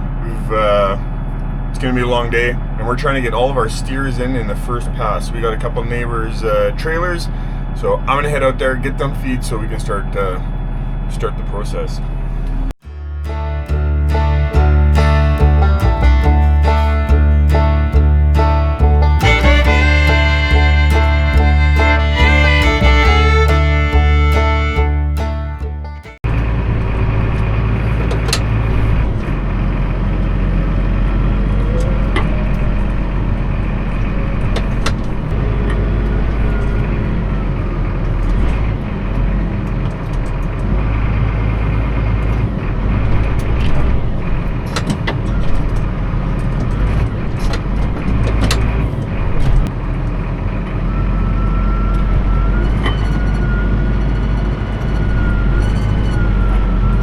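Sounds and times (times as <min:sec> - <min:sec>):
farm vehicle engine running: 0:12.5 - 0:44.7.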